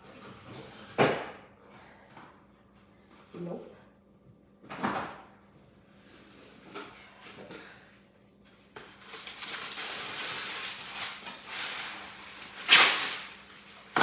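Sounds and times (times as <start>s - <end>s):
baking paper crinkling: 8.8s - 14.0s
loud paper crackle: 8.9s - 14.0s.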